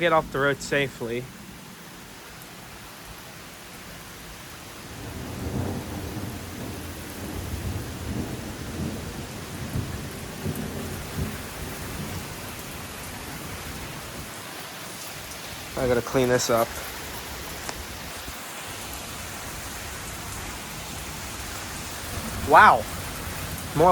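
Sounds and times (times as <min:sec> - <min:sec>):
heavy rain falling: 0:00.0 - 0:23.9
rolling thunder rumble: 0:04.9 - 0:14.4, 0:19.2 - 0:23.9.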